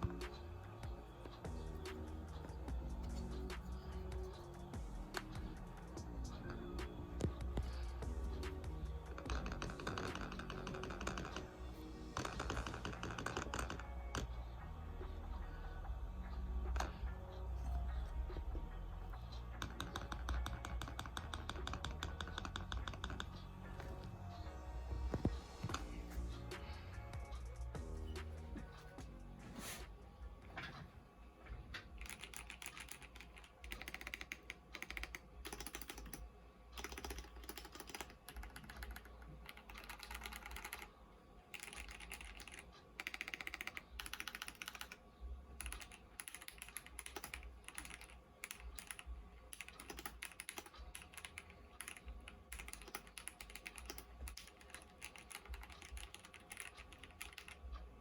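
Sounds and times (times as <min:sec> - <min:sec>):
mechanical keyboard typing: 0:00.0 - 0:11.5, 0:19.5 - 0:24.1, 0:31.8 - 0:36.2, 0:36.8 - 0:40.9, 0:41.5 - 0:45.0, 0:45.6 - 0:57.8.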